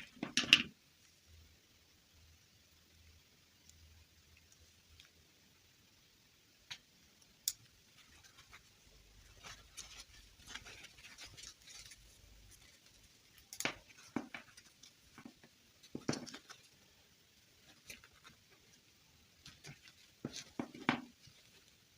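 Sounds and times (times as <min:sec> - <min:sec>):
soft rustling: 0:07.8 - 0:21.9.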